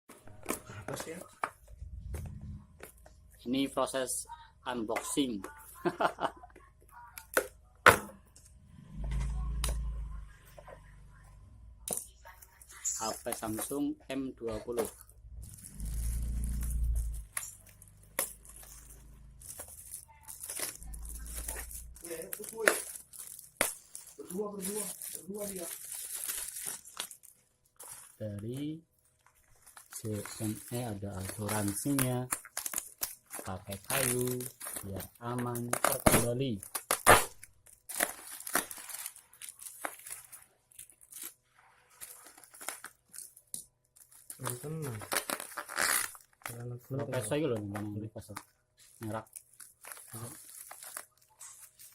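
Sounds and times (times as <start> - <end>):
packaging crinkling and tearing: 14.7 - 51.9.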